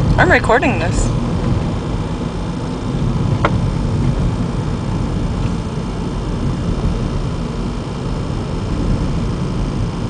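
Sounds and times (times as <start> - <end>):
car road and engine noise: 0.0 - 10.0.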